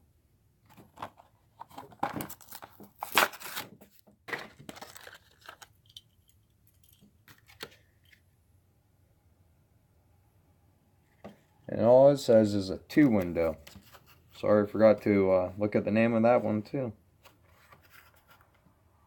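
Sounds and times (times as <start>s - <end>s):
packaging ripping and crinkling: 2.0s - 5.8s.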